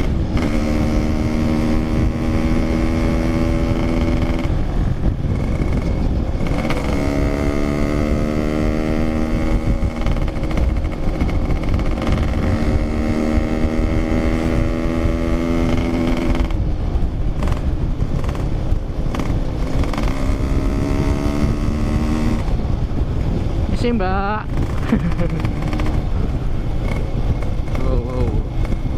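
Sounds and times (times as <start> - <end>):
motorcycle engine running: 0.0 - 28.9
wind on microphone: 0.0 - 28.9.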